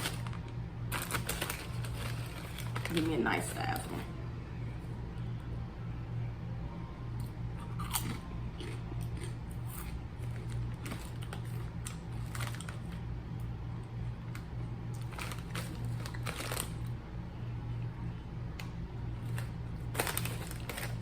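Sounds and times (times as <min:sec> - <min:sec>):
chips crunching while chewed: 0:00.0 - 0:03.1, 0:07.6 - 0:13.0, 0:14.3 - 0:16.9, 0:19.2 - 0:21.0
low hum: 0:00.0 - 0:21.0.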